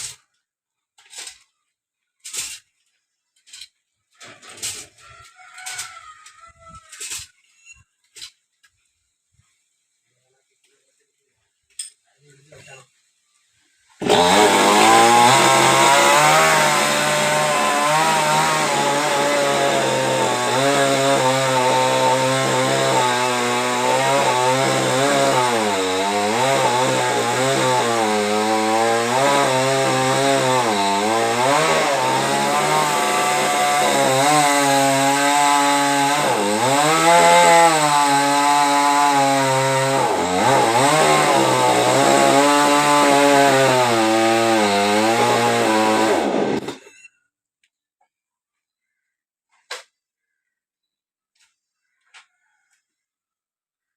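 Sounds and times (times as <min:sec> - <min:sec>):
chainsaw cutting wood: 0:14.0 - 0:47.1.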